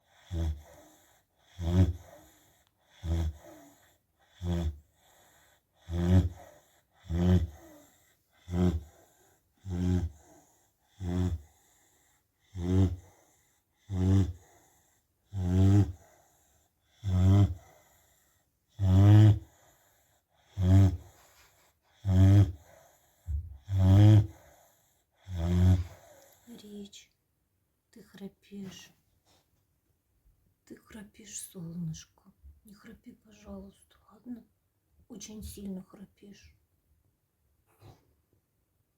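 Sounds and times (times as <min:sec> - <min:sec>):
dog snoring: 0:00.0 - 0:26.8.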